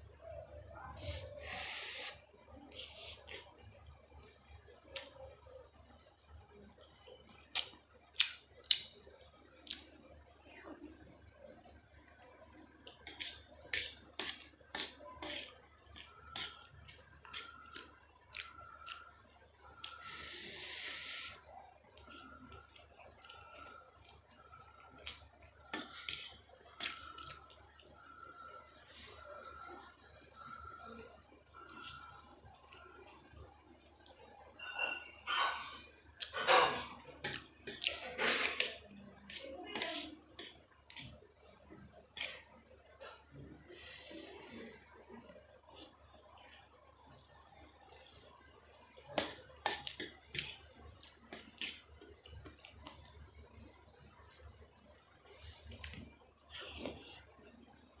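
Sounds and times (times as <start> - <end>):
wet chewing and smacking: 6.8 - 10.0, 21.9 - 28.0, 30.7 - 34.3, 48.9 - 53.2
wet slurping: 25.0 - 27.9, 49.1 - 52.4.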